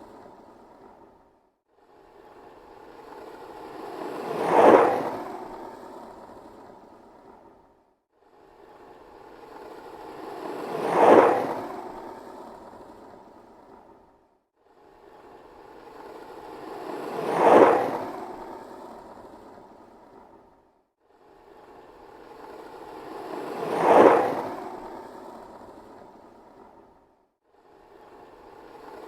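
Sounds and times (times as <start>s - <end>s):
skateboard wheels rolling past: 3.0s - 7.5s, 9.4s - 14.0s, 15.9s - 20.4s, 22.2s - 26.9s.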